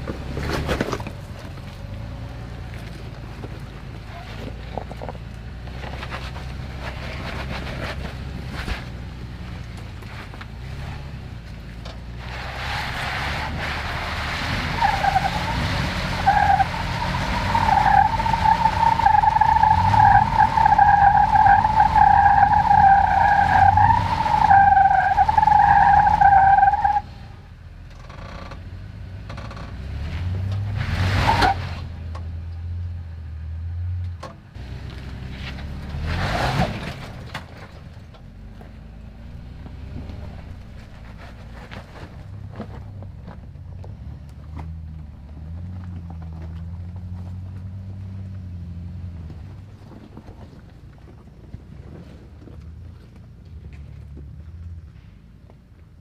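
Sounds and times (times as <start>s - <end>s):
tires squealing on rock: 0.0s - 28.6s, 29.3s - 32.0s, 34.6s - 55.0s
engine working under load: 0.0s - 56.0s.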